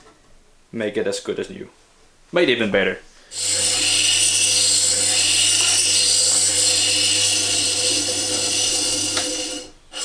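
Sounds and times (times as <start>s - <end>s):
grinding wheel hissing on steel: 3.3s - 10.0s
motor humming: 3.3s - 10.0s.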